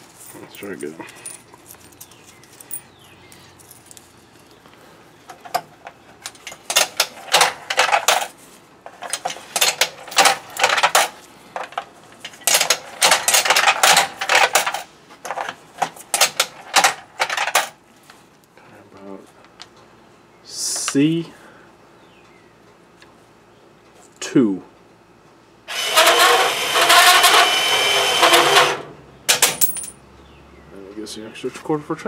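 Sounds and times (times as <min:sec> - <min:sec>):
coins clinking in vending machine: 0:28.2 - 0:30.0.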